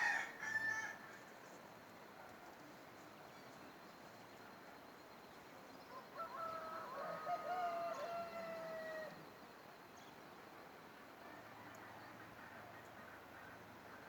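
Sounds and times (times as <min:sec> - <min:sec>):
rooster crowing: 0:00.0 - 0:01.0, 0:06.2 - 0:09.1
faint steady hiss: 0:00.0 - 0:14.0.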